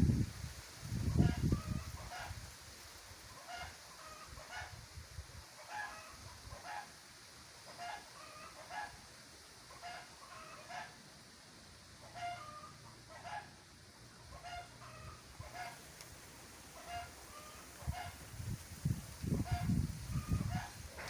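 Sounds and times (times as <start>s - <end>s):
wind rumbling on microphone: 0.0s - 3.2s, 16.8s - 21.0s.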